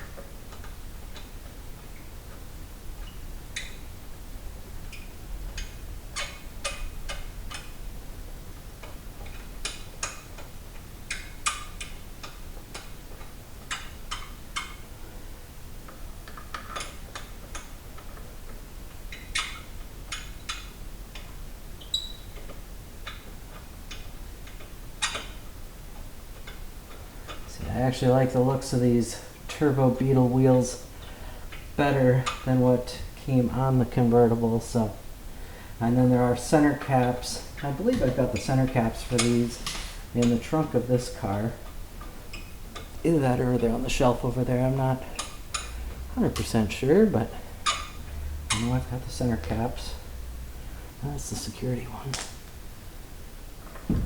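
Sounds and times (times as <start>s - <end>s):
metallic clicks of lug bolts: 15.9s - 25.5s, 47.6s - 48.7s.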